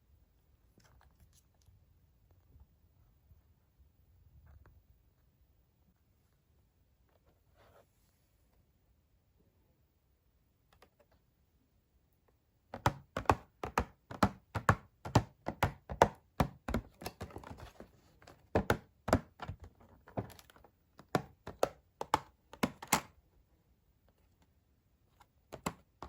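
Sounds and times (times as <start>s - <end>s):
taps on toy packaging: 12.8s - 23.1s, 25.5s - 25.9s.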